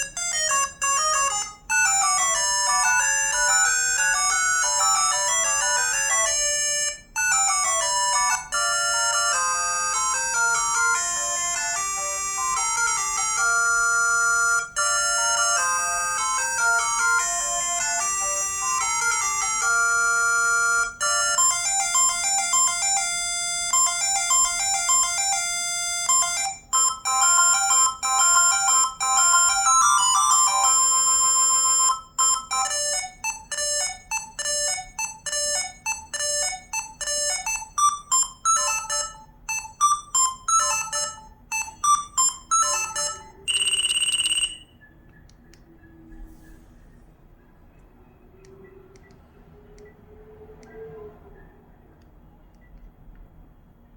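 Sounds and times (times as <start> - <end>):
phone ringtone melodies: 0.0 - 45.0
short repeated electronic notes: 26.2 - 44.8.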